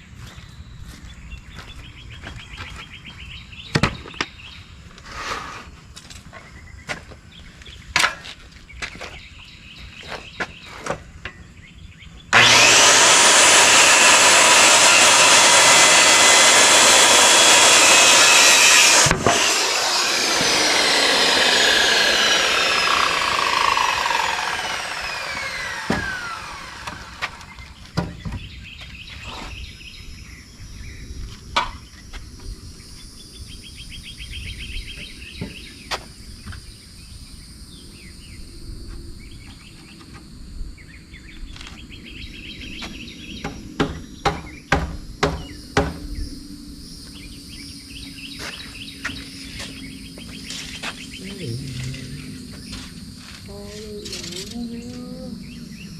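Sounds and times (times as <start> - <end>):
power saw blade whining down: 12.3 - 27.8
insects trilling: 44.8 - 55.9.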